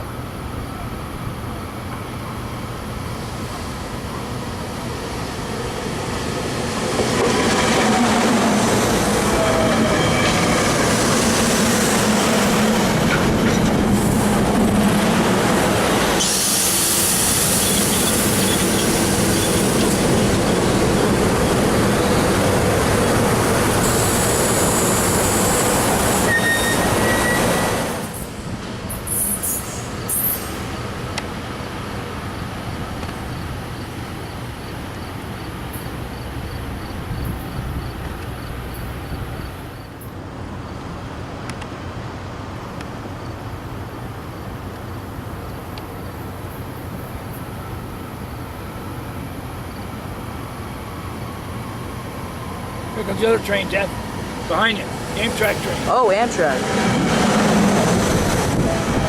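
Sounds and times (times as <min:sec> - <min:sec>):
train rumbling past: 0:00.0 - 0:59.0
train wheels squealing: 0:09.3 - 0:10.9, 0:16.2 - 0:20.3, 0:23.7 - 0:28.3, 0:29.0 - 0:30.7.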